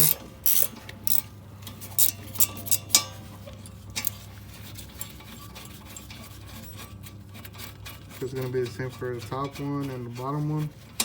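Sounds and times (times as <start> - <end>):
hand ratchet clicking: 0.0 - 4.2
low steady hum: 0.0 - 11.0.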